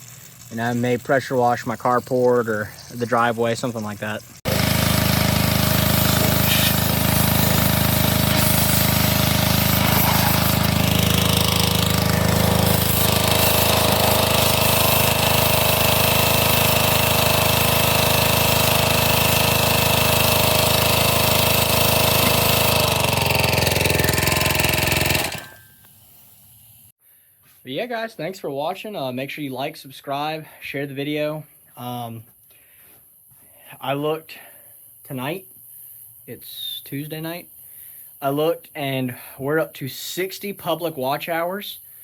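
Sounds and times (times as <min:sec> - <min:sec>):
pressure washer engine running: 0:00.0 - 0:25.7.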